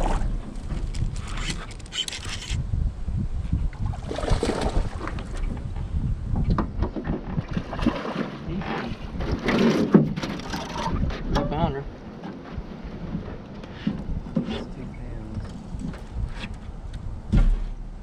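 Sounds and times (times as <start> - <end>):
wind rumbling on microphone: 0.0 - 18.0
knocks and clatter: 5.4 - 11.6, 17.3 - 18.0.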